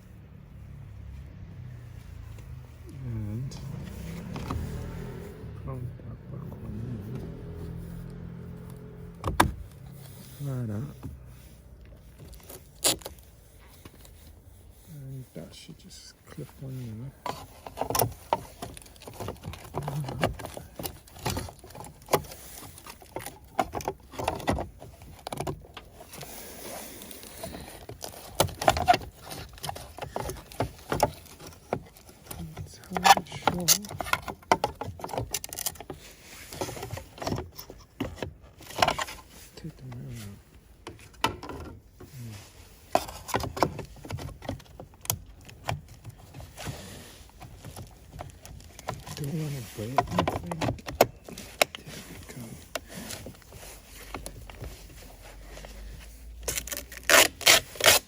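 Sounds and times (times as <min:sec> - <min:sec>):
plastic clicks and rubbing: 0:06.5 - 0:14.4, 0:17.2 - 0:58.0
plastic mirror parts clicking: 0:27.0 - 0:39.3.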